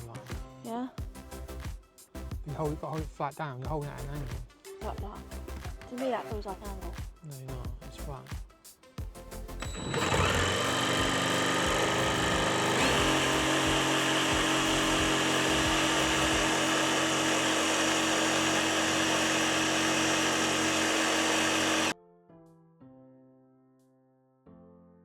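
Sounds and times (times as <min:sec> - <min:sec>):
electric jigsaw cutting: 0:09.6 - 0:21.9.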